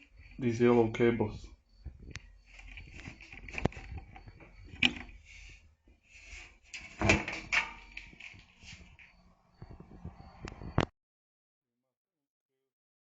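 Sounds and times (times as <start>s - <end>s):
scraping and rustling: 1.3s - 10.1s.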